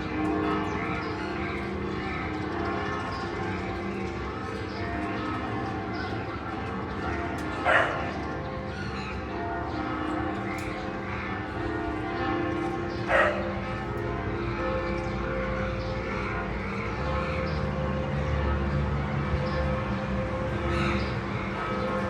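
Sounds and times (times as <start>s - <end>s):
church bells ringing: 0.0s - 22.0s
dog barking: 7.6s - 8.0s, 13.1s - 13.5s.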